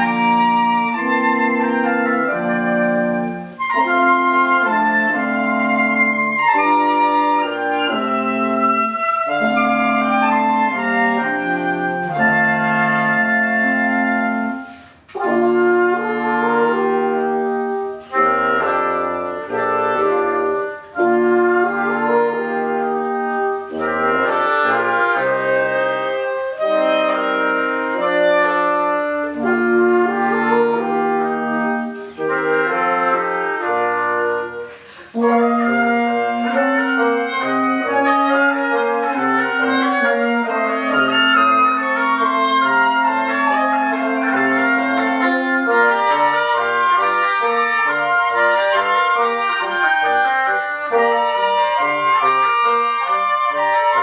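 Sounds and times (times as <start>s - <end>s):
woodwind quintet playing classical piece: 0.0s - 54.0s.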